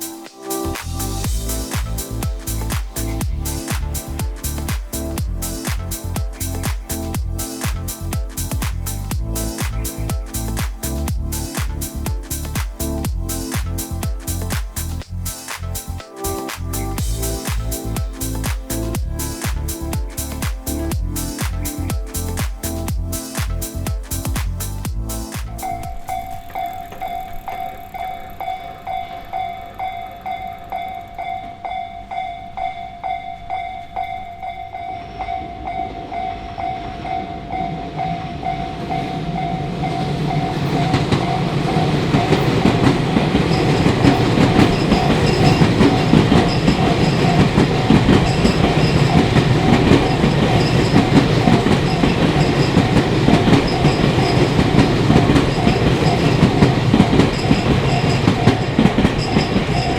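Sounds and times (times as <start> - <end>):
electric train passing: 0.0 - 22.9, 23.6 - 59.9
level-crossing warning bell: 0.8 - 15.0, 17.0 - 22.8, 25.4 - 59.9
train wheels clattering on rails: 36.6 - 59.9.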